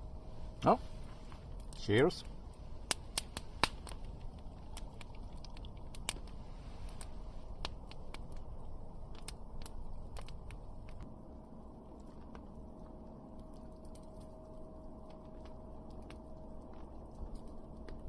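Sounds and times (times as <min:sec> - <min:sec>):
campfire crackling and popping: 0:00.0 - 0:18.0.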